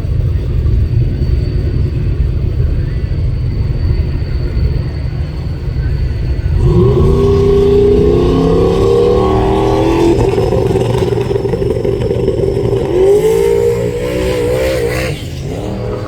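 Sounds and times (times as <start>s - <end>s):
steady low rumble: 0.0s - 16.0s
race car engine revving: 6.2s - 16.0s.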